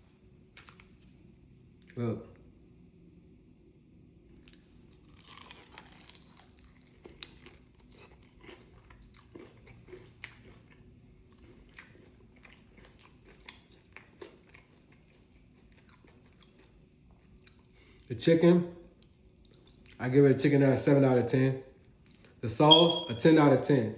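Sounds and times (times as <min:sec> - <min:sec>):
person chewing crunchy food: 0:04.4 - 0:18.1.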